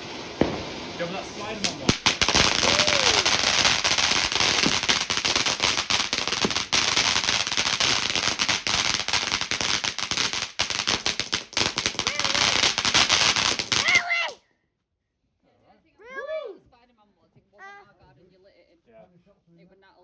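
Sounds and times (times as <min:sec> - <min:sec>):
firework crackling and hissing: 0:00.0 - 0:14.4.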